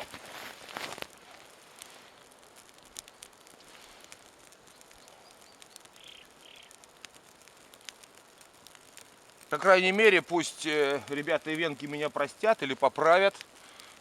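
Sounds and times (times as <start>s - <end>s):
kindling crackling: 0.0s - 14.0s
small bird chirping: 4.6s - 6.8s.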